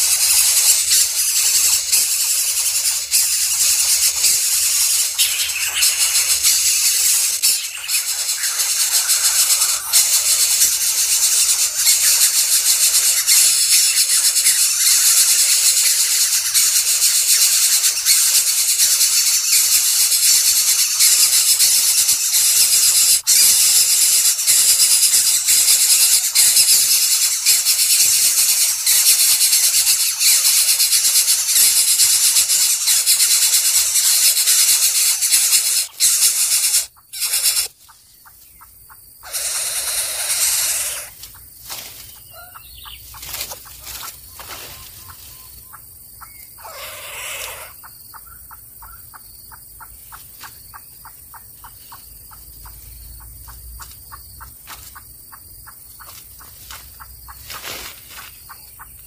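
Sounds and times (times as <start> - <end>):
high-pitched hissing: 0.0 - 37.8, 39.2 - 41.2, 46.6 - 47.8.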